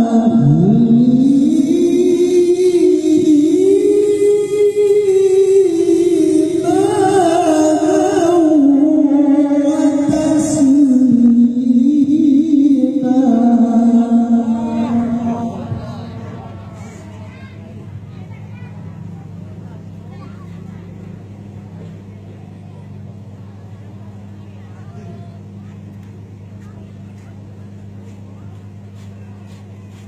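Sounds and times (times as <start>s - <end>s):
man reciting melodically: 0.0s - 17.1s.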